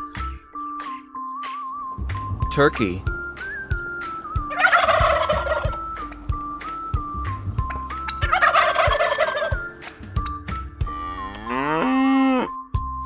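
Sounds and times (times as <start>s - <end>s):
turkey gobbling: 2.0s - 10.3s.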